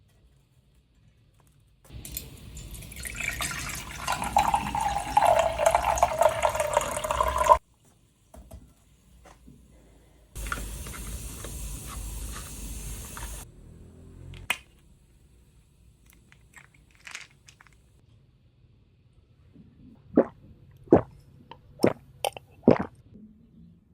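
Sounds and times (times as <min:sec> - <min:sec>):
tap water filling a container: 0:02.1 - 0:07.6.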